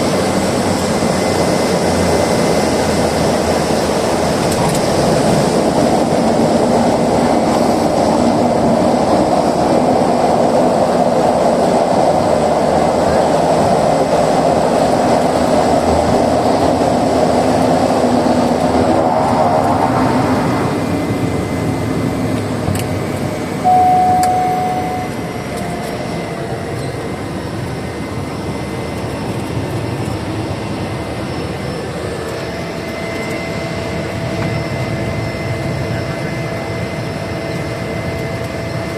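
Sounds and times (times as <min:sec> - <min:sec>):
propeller plane cabin noise: 0:00.0 - 0:38.9
brief tone: 0:23.6 - 0:27.0.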